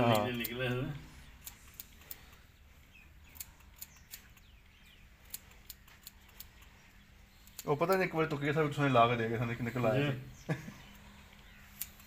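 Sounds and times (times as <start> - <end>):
faint sharp clicks: 10.8 - 12.0.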